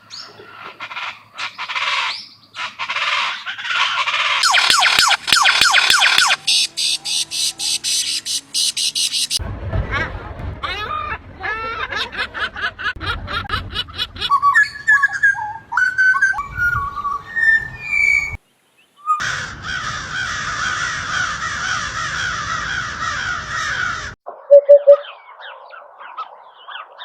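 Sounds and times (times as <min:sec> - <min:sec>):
fast repeated bird calls: 0:01.4 - 0:09.4
flock of birds chattering: 0:06.2 - 0:09.4
whistled bird notes: 0:06.5 - 0:09.4, 0:24.4 - 0:25.6.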